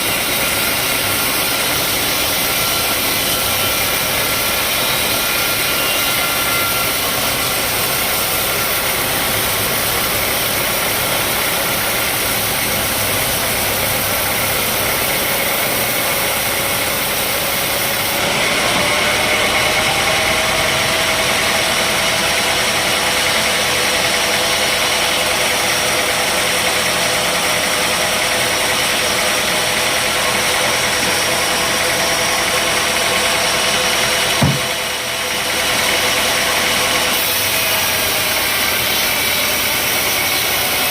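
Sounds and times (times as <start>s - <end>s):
sawmill machinery running: 0.0s - 40.9s
short knock: 34.4s - 34.8s.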